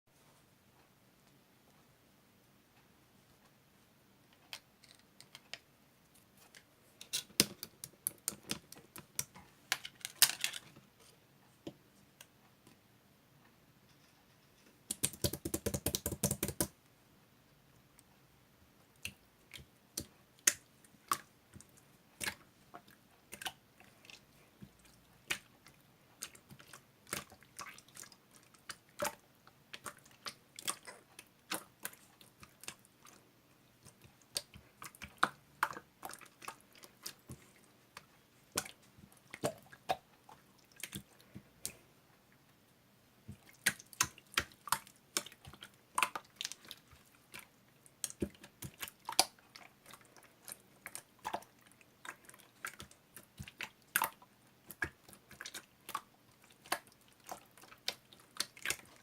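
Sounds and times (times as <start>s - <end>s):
sharp clicks and taps: 14.9s - 16.8s.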